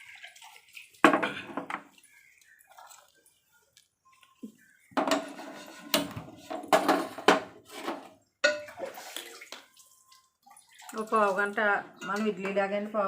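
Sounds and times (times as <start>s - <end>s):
pots and lid clattering: 5.0s - 8.8s.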